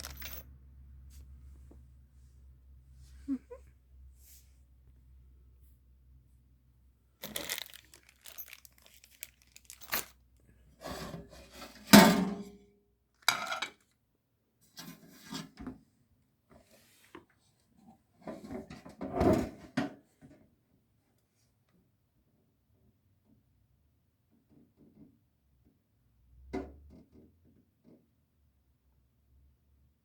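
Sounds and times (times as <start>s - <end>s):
appliance parts scraping: 0.0s - 0.4s, 7.2s - 10.2s
packaging rustling: 0.0s - 0.4s, 7.2s - 10.2s.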